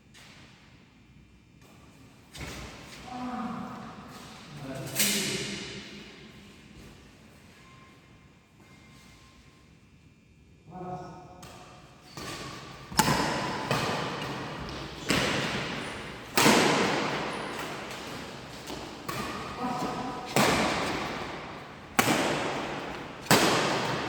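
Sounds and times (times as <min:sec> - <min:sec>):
rackets hitting shuttlecock: 0:11.4 - 0:24.0.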